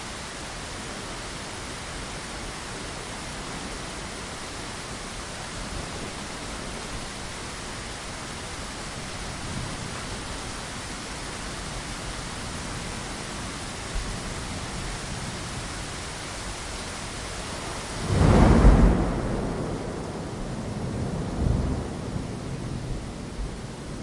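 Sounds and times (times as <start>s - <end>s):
rain pattering on a window: 0.0s - 24.0s
thunder rumbling: 18.0s - 23.8s.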